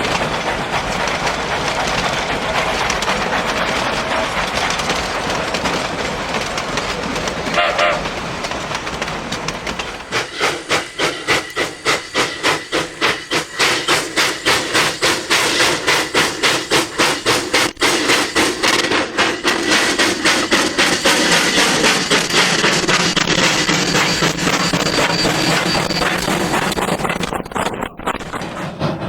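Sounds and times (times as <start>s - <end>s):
freight train rumbling past: 0.0s - 29.0s
wheels clacking over rail joints: 0.0s - 29.0s
high wheel squeal: 19.3s - 27.3s.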